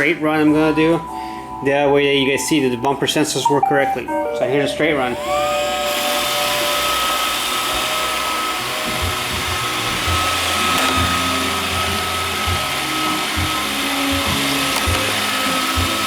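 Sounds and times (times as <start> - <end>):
robot vacuum motor whine: 5.2 - 16.0.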